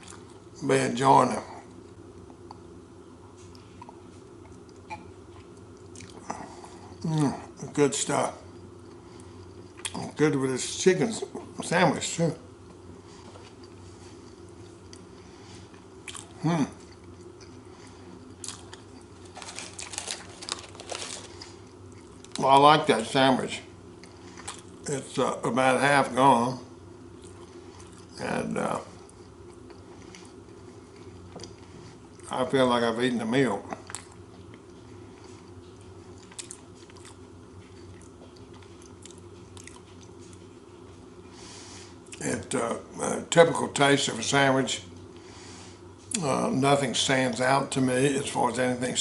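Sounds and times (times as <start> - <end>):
steady low hum: 0.0 - 49.0
person chewing food: 3.4 - 7.3, 8.8 - 10.2, 12.7 - 22.4, 24.0 - 24.8, 27.1 - 28.2, 29.0 - 32.3, 33.7 - 40.5.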